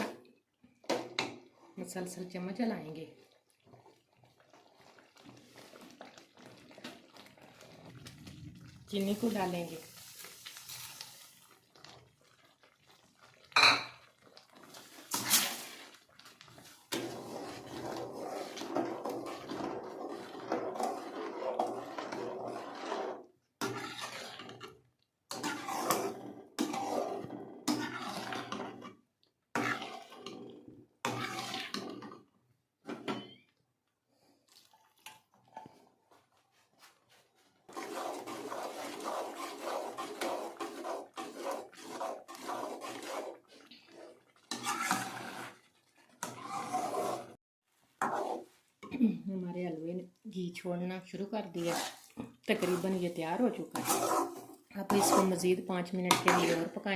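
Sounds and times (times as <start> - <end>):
metal spoon stirring and scraping pot: 0.0 - 0.3, 0.9 - 32.3, 34.8 - 47.4, 48.0 - 49.0, 51.1 - 56.9.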